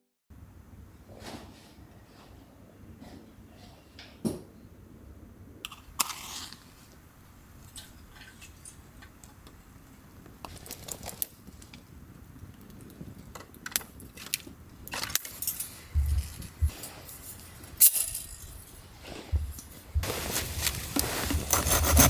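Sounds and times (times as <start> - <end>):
small metal clinks: 14.9 - 18.8.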